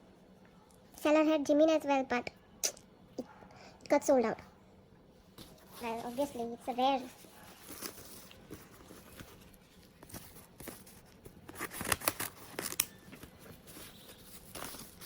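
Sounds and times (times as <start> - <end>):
packaging crinkling and tearing: 7.3 - 15.0.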